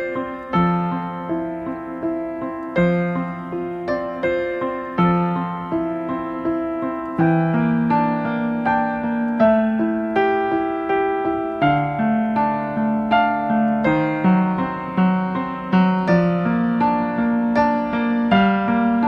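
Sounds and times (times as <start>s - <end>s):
gentle piano melody: 0.0s - 19.0s.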